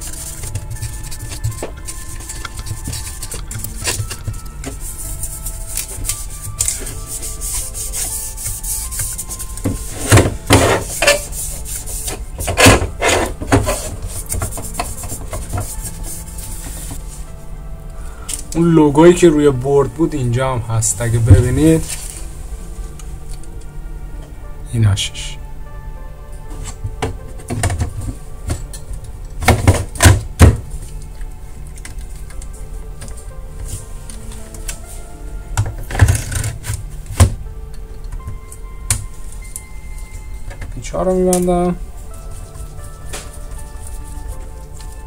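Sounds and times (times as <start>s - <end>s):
scrubbing against plastic: 0.0s - 17.2s
background music: 0.0s - 45.0s.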